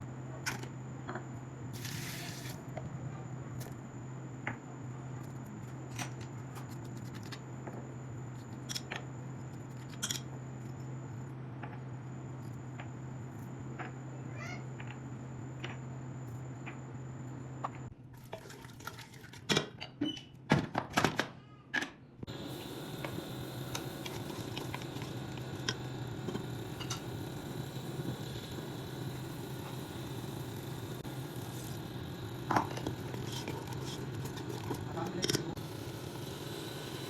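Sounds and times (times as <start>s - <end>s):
steady low hum: 0.0s - 18.1s, 22.1s - 37.0s
short hiss: 1.8s - 2.6s.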